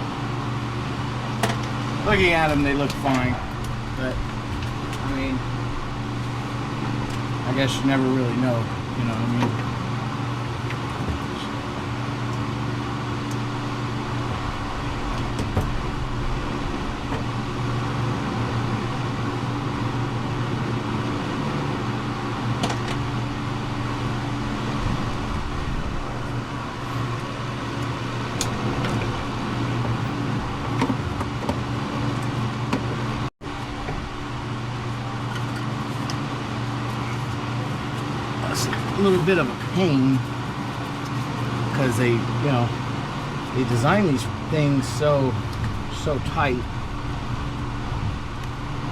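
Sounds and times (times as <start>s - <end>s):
mechanical hum: 0.0s - 48.9s.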